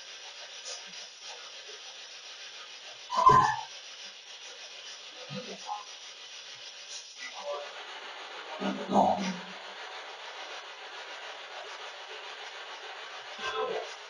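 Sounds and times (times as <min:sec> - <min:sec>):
radio static: 0:08.4 - 0:09.6, 0:13.4 - 0:14.0.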